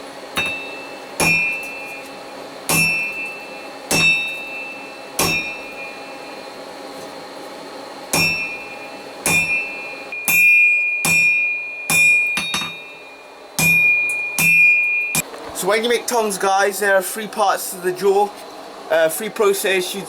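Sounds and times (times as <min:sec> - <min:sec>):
hammer striking hot steel on anvil: 0:00.3 - 0:06.6, 0:08.1 - 0:15.3
anvil ringing: 0:00.4 - 0:06.4, 0:08.1 - 0:15.2.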